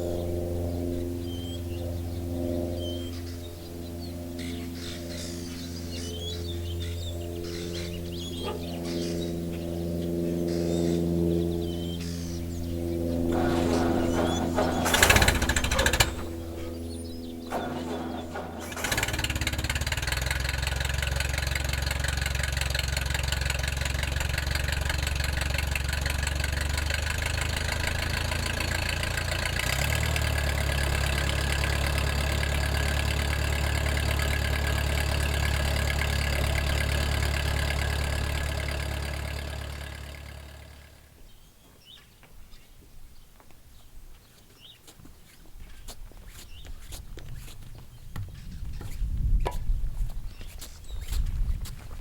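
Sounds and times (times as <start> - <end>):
tractor engine running: 0.0 - 41.2.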